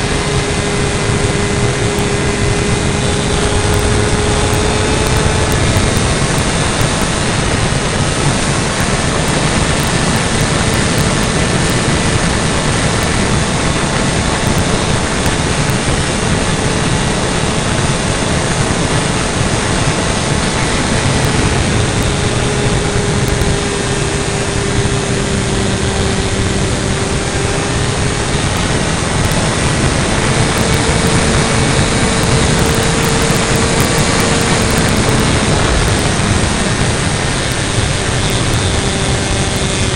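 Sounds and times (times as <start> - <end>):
model airplane engine and propeller: 0.0 - 39.9
wind rush: 0.0 - 39.9.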